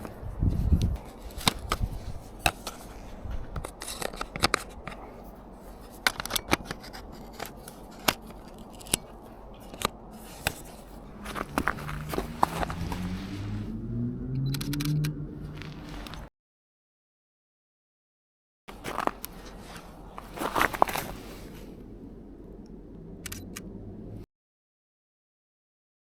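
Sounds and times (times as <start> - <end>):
camera lens clicks and scrapes: 0.0 - 5.0, 5.6 - 13.5, 14.4 - 16.3, 18.7 - 21.7
low hum rising in pitch: 10.9 - 16.3, 21.8 - 24.2.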